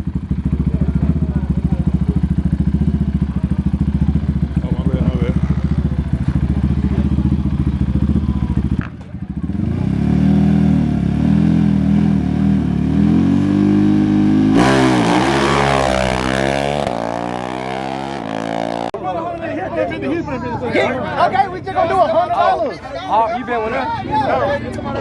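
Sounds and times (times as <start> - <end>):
atv engine idling and revving: 0.0 - 19.0.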